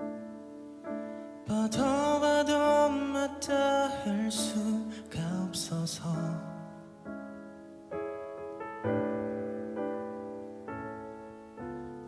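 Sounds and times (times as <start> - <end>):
piano playing slow chords: 0.0 - 12.0
person singing slow ballad: 1.4 - 7.0.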